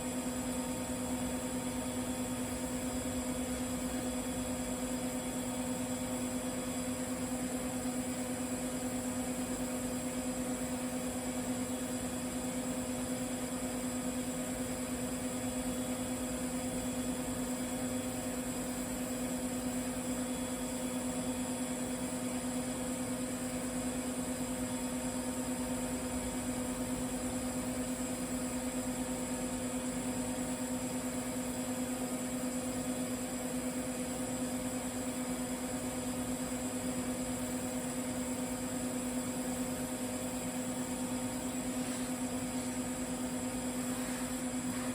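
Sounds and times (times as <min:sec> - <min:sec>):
welding arc buzz and hiss: 0:41.3 - 0:44.9.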